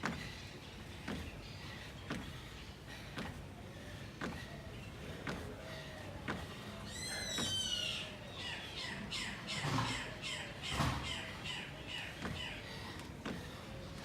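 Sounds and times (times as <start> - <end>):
bird squawking: 6.9 - 12.6.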